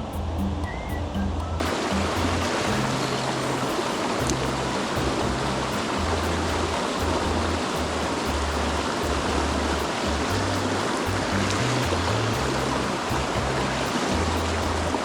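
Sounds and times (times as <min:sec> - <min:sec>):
background music with bass: 0:00.0 - 0:15.0
rushing stream water: 0:00.0 - 0:15.0.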